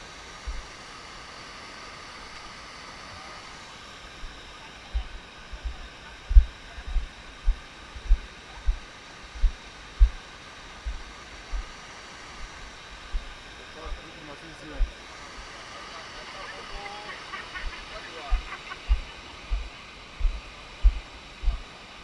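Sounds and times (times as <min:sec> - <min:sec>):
deep thumps: 0:05.0 - 0:08.8, 0:09.4 - 0:10.2, 0:10.8 - 0:11.8, 0:13.1 - 0:14.0, 0:18.3 - 0:21.6.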